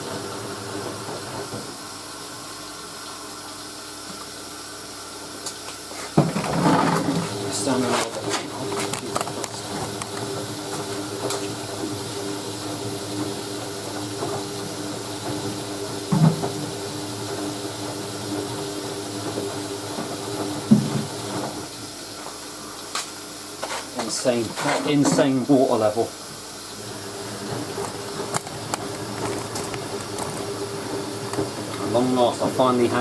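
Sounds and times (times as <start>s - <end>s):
washing machine hum: 0.0s - 33.0s
water hissing into drum: 0.0s - 33.0s
washing machine knocks: 16.1s - 16.7s, 20.6s - 21.2s.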